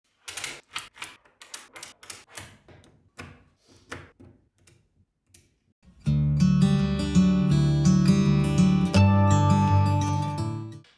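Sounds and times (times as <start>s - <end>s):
acoustic guitar music: 5.9s - 10.8s.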